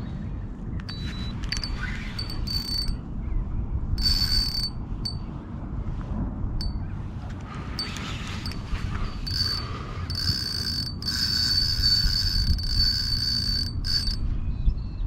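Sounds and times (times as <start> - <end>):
fishing reel drag clicking: 0.9 - 3.0, 4.0 - 5.2, 7.8 - 14.2
reel drag buzzing: 0.9 - 3.0, 4.0 - 5.2, 7.6 - 14.3.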